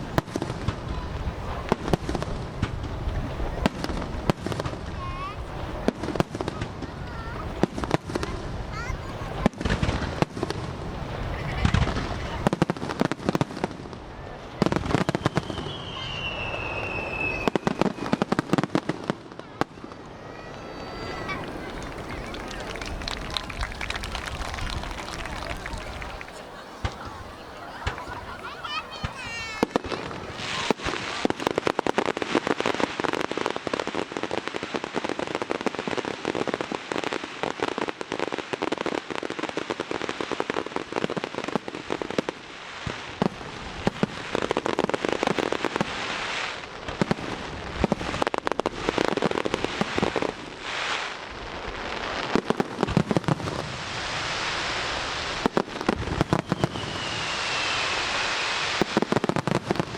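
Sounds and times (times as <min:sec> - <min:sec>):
fireworks bangs and crackling: 0:00.0 - 0:59.9
falling firework whistle: 0:14.6 - 0:18.8, 0:19.6 - 0:31.5, 0:53.2 - 0:59.6.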